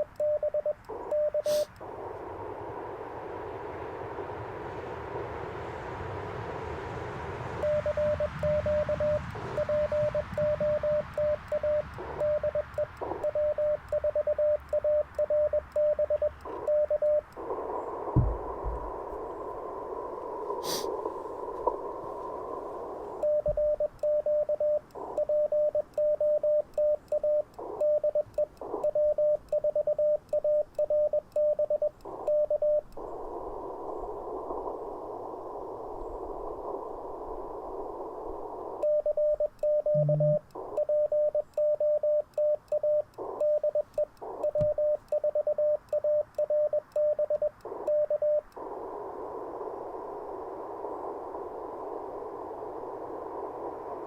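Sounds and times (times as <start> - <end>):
morse code beeps: 0.0 - 1.7, 7.6 - 17.3, 23.2 - 32.9, 38.8 - 48.4
radio band hiss: 0.8 - 5.4, 8.2 - 13.9, 16.3 - 23.2, 24.8 - 25.2, 27.5 - 29.2, 32.0 - 38.8, 39.9 - 40.8, 43.1 - 45.1, 47.6 - 54.0.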